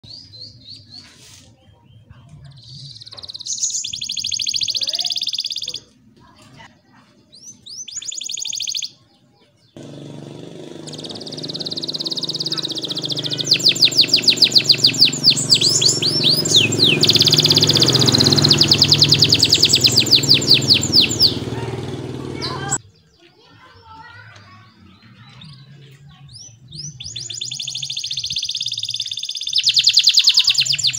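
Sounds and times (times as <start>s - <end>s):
canary singing trills: 1.7s - 5.9s, 6.8s - 24.0s, 24.7s - 30.9s.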